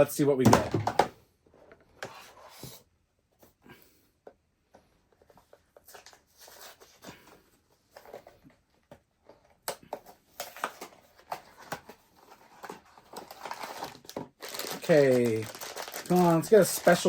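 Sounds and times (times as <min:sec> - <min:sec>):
cardboard packaging being handled: 0:09.9 - 0:17.0.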